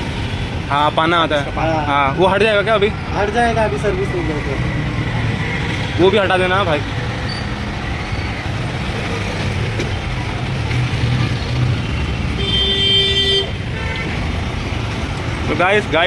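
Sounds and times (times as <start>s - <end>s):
road traffic noise: 0.0s - 16.0s
vehicle horn: 12.4s - 14.2s.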